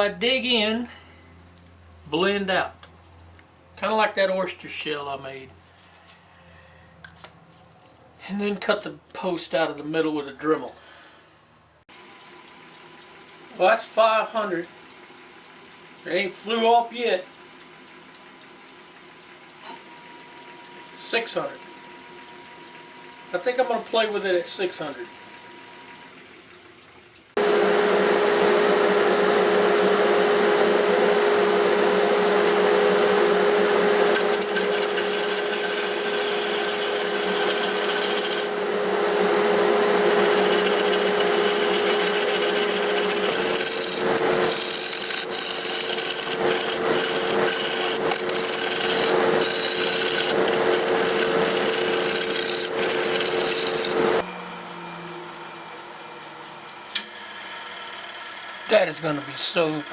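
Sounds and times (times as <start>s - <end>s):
lathe tool scraping wood: 20.8s - 25.1s, 27.3s - 54.3s, 56.9s - 59.9s
lathe motor whine: 27.4s - 59.9s.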